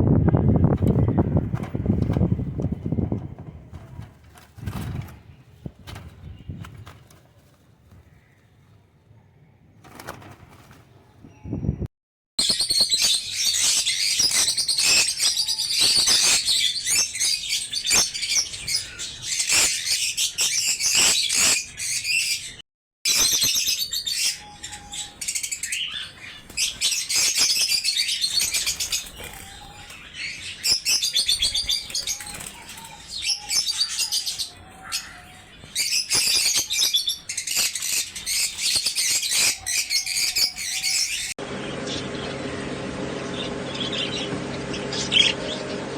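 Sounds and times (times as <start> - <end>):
small birds chirping: 0.4 - 11.8, 12.4 - 45.9
wings fluttering: 0.6 - 8.7, 9.8 - 11.4, 12.5 - 18.8, 26.2 - 35.2.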